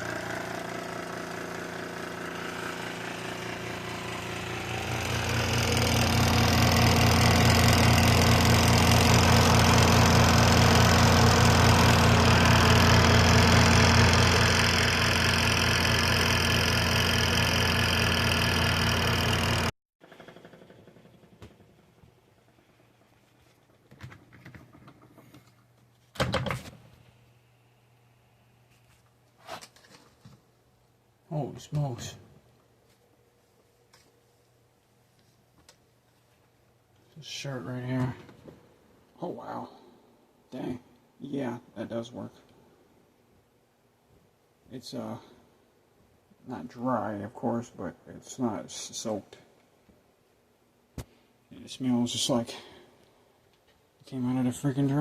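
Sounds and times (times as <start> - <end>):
spin dryer motor humming: 0.0 - 23.1.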